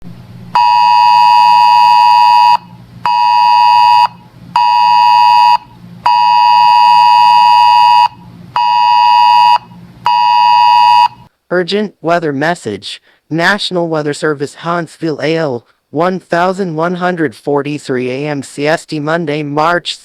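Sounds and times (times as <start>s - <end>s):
weather radio alert beeps: 0.6s - 11.3s.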